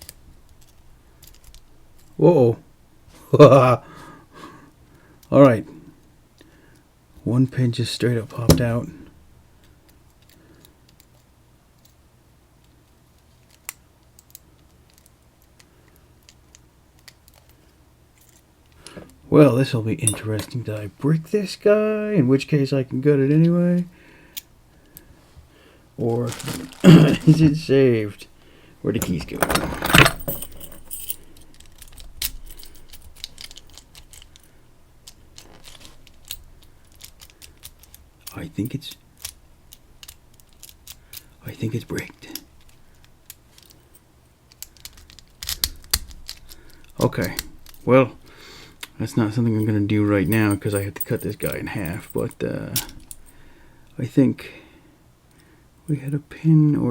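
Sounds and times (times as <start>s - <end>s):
low steady hum: 0.0s - 56.9s
keys jangling: 29.0s - 34.5s, 44.9s - 47.9s, 50.2s - 53.4s.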